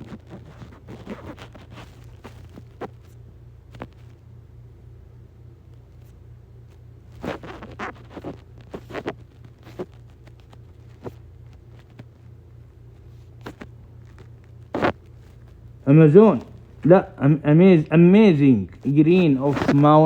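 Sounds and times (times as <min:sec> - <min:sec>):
clicks and scratchy taps: 0:00.0 - 0:04.2, 0:05.7 - 0:12.2
low electrical hum: 0:00.0 - 0:20.0.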